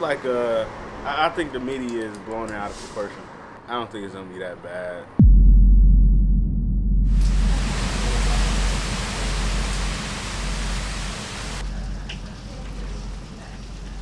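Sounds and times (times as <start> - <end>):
heavy rain hiss: 7.2 - 14.0.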